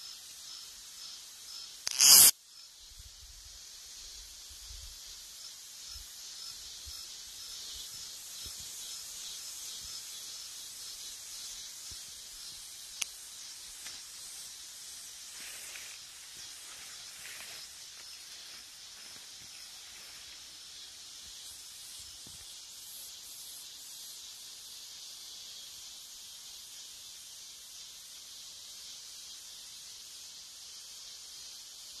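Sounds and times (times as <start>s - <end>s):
cicada buzzing: 0.0s - 2.9s, 4.0s - 25.8s
sharp click: 1.8s - 2.3s.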